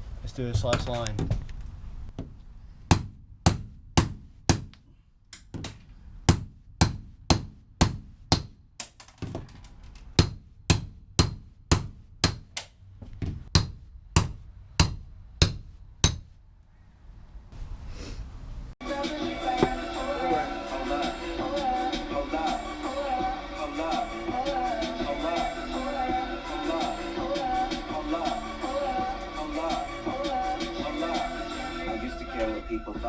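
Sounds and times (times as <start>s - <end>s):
hammer striking steel punch: 2.9s - 4.8s, 5.4s - 8.6s, 10.2s - 12.7s, 13.5s - 16.3s.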